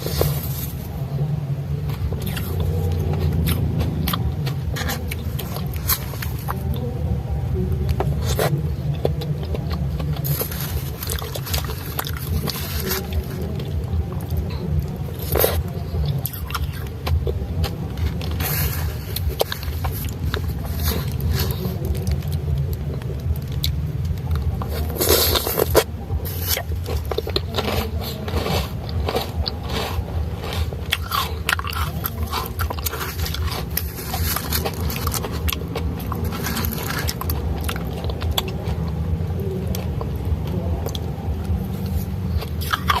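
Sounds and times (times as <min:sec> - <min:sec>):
steady low hum: 0:00.0 - 0:43.0
ice crunched between teeth: 0:24.4 - 0:38.9, 0:41.9 - 0:43.0.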